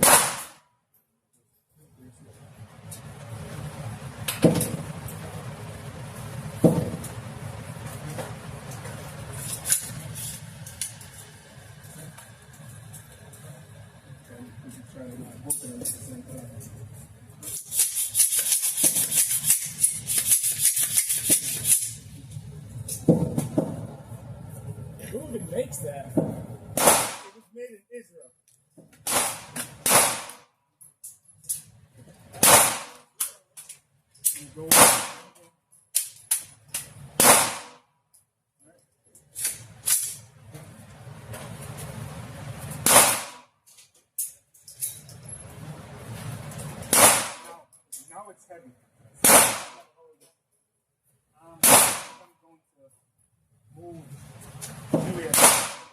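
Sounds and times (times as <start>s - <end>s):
gunshots cracking: 0.0s - 0.6s, 26.8s - 27.4s, 29.0s - 30.5s, 32.4s - 33.1s, 34.7s - 35.4s, 37.2s - 37.8s, 42.8s - 43.5s, 46.8s - 47.6s, 49.2s - 49.9s, 51.6s - 52.3s, 55.1s - 55.9s
dry shaker-like rattling: 17.4s - 22.1s.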